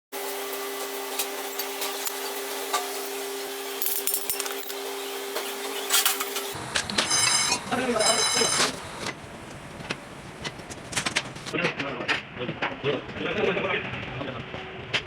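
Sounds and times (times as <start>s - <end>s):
metal tools clinking: 3.8s - 4.9s, 5.8s - 8.7s.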